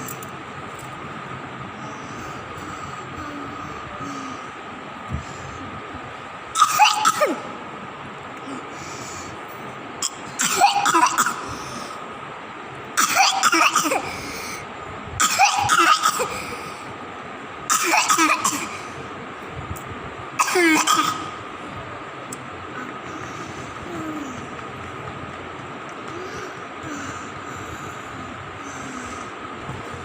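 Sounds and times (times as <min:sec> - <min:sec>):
baby coughing: 0:06.5 - 0:07.5, 0:10.0 - 0:11.9, 0:13.0 - 0:14.3, 0:15.2 - 0:16.7, 0:17.7 - 0:18.9, 0:20.4 - 0:21.4.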